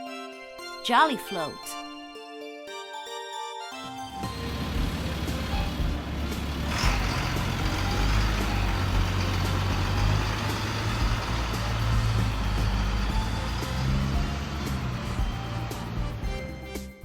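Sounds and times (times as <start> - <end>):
vehicle engine running: 4.2 - 16.6.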